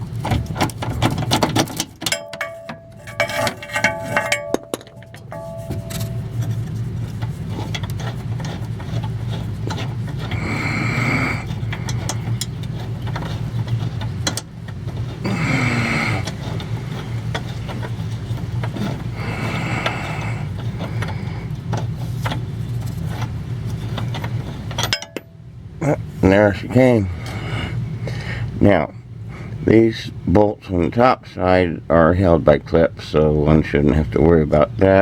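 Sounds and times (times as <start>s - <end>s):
low mechanical hum: 0.0s - 35.0s
hand tools clicking: 0.4s - 22.4s.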